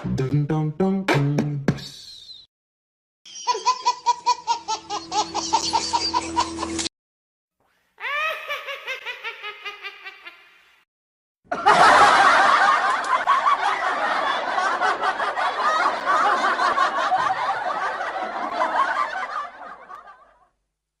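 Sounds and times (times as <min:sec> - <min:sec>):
rhythmic laugh: 0:03.3 - 0:06.9, 0:11.5 - 0:20.4
many voices laughing: 0:11.5 - 0:20.5.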